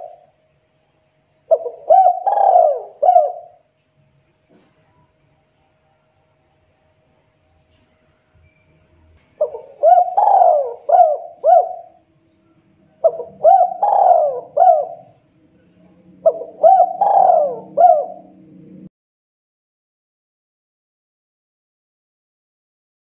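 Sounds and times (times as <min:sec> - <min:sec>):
dove cooing: 0:00.0 - 0:00.4, 0:01.5 - 0:03.6, 0:09.4 - 0:12.0, 0:12.9 - 0:18.9.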